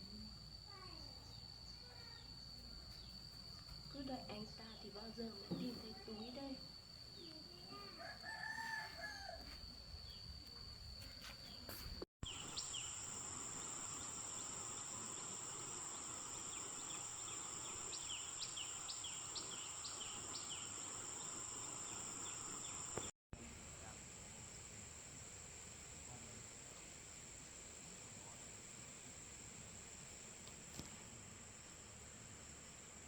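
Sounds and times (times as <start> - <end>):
high insect drone: 0.0 - 33.0
rooster crowing: 7.9 - 9.6.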